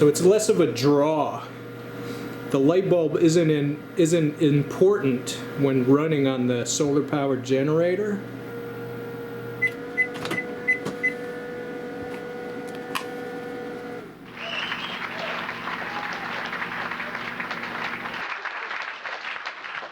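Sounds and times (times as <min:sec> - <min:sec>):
microwave humming: 0:00.0 - 0:18.2
short beeps: 0:10.7 - 0:11.2
applause: 0:14.3 - 0:19.9.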